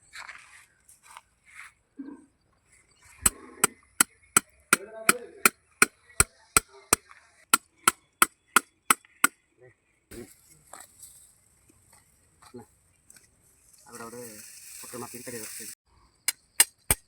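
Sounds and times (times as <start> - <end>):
hammer striking: 3.2 - 9.4.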